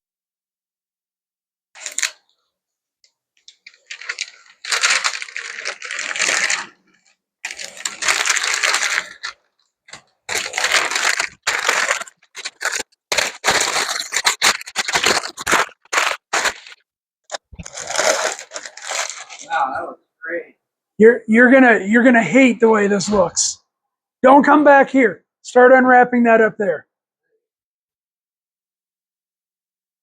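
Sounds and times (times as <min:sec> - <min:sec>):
masking tape peeling and crumpling: 0:01.8 - 0:02.3, 0:03.5 - 0:19.5.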